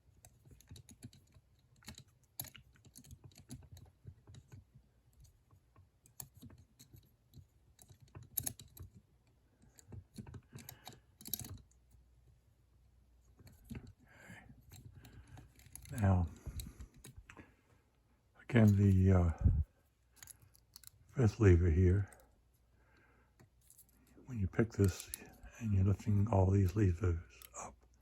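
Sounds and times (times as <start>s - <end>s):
lock picks clicking in padlock: 0.5s - 3.8s, 7.8s - 9.0s, 9.7s - 11.7s.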